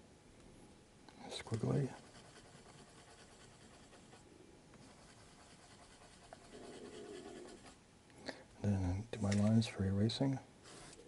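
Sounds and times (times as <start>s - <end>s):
pencil scratching on paper: 1.4s - 4.2s, 4.8s - 7.8s.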